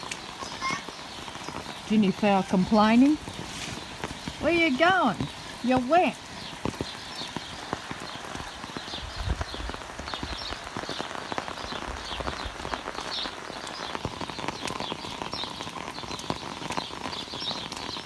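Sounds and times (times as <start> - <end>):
pattering rain: 0.0 - 18.0
guinea fowl harsh calls: 0.4 - 0.9.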